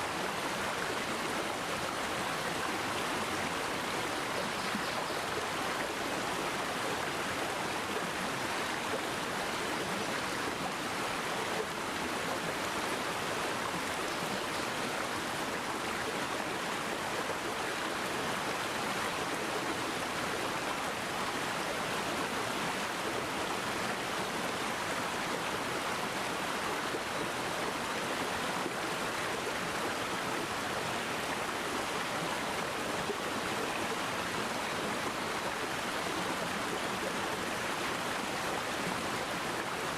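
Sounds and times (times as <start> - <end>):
stream water running over rocks: 0.0 - 39.9.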